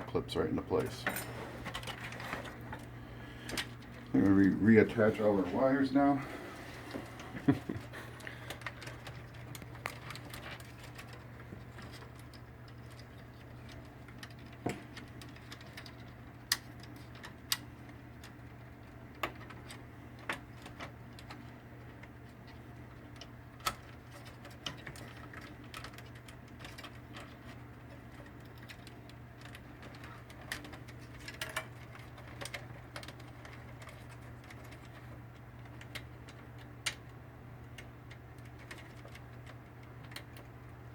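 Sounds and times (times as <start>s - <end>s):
steady low hum: 0.0s - 40.9s
wire connectors clicking: 8.2s - 40.7s.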